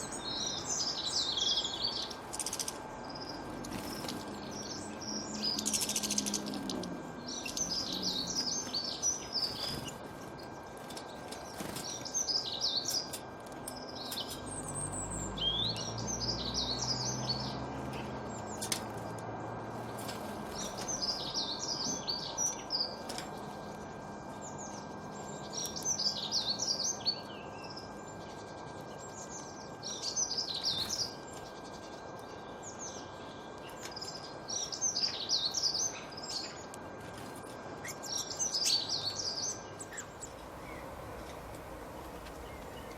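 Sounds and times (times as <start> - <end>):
songbirds chirping: 0.0 - 42.9
steady background hiss: 20.2 - 42.9.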